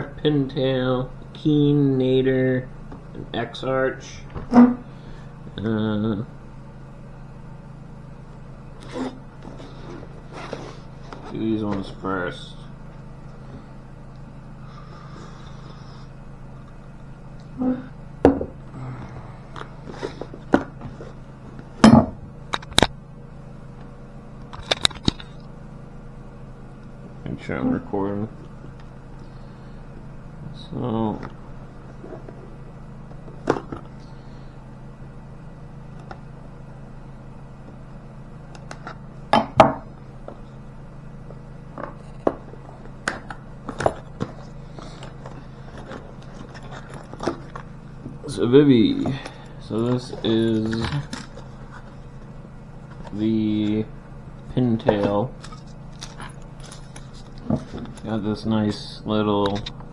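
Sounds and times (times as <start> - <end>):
boxes knocking and tapping: 18.3 - 18.7, 54.8 - 58.0
packaging clicks taps and scrapes: 41.8 - 47.7.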